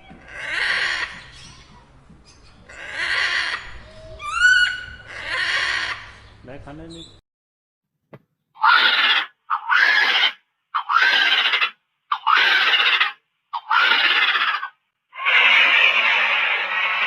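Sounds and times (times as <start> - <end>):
large bird harsh calls: 2.6 - 7.2, 8.6 - 17.0.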